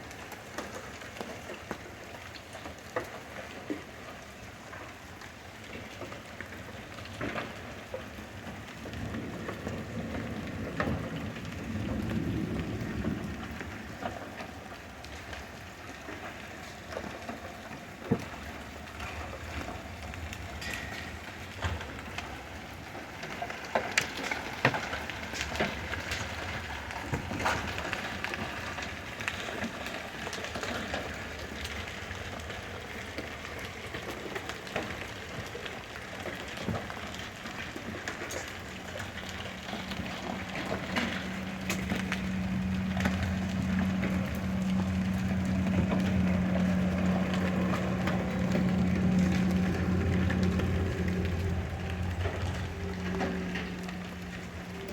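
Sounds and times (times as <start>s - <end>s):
hail and rain pelting down: 0.0s - 54.9s
hail striking hard surfaces: 0.0s - 54.9s
steady low hum: 38.8s - 54.9s.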